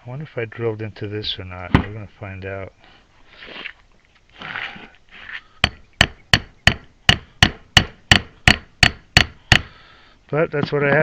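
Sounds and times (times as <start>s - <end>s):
hammer striking metal: 5.6s - 9.7s.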